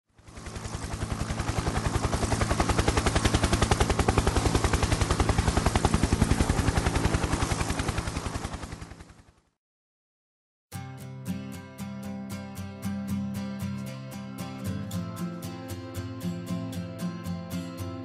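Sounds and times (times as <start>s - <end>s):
helicopter rotor blades chopping: 0.2s - 9.4s.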